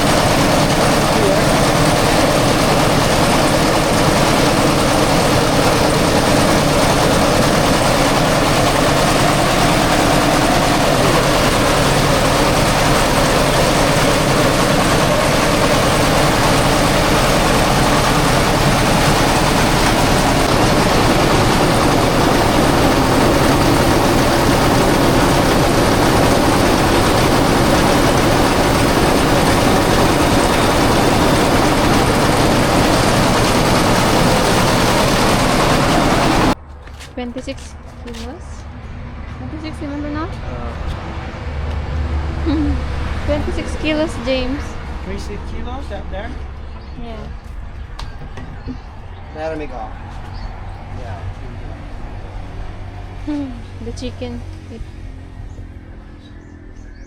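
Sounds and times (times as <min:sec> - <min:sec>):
rice mill engine running: 0:00.0 - 0:38.5.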